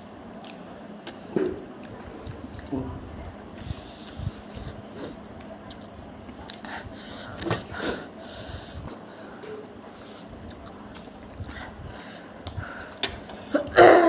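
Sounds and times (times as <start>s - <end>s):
small eating clicks: 1.8s - 6.7s, 9.6s - 13.8s
people sniffling and breathing hard: 3.0s - 5.3s, 6.5s - 10.4s, 11.3s - 13.8s.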